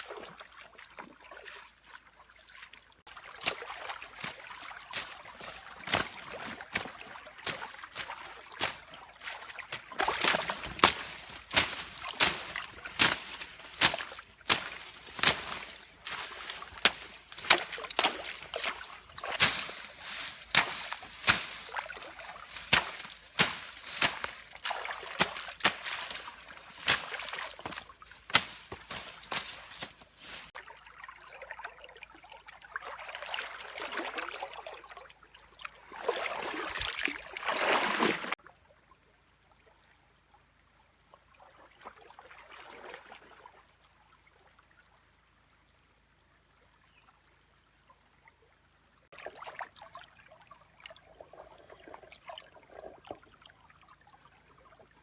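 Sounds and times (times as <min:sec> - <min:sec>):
water sloshing and trickling: 0:00.0 - 0:38.4, 0:49.2 - 0:55.0
sharp water splashes: 0:03.1 - 0:30.5.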